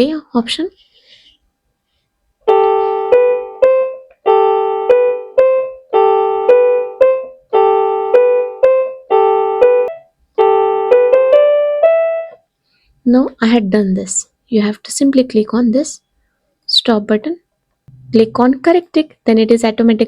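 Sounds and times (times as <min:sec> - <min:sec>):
piano phrase: 0:02.5 - 0:12.4, 0:17.9 - 0:18.6.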